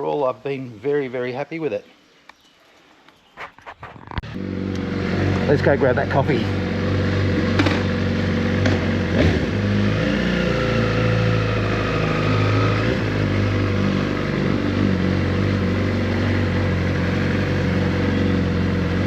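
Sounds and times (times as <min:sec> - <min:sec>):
motorcycle engine running at low revs: 0:04.2 - 0:19.0.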